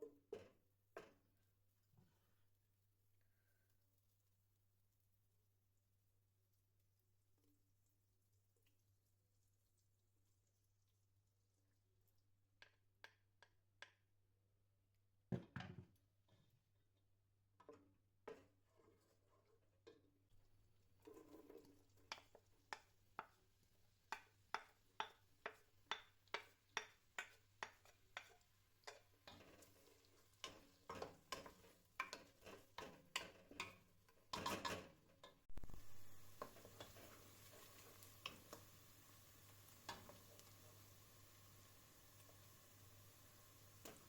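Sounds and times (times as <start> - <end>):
steady faint hiss: 35.5 - 44.0.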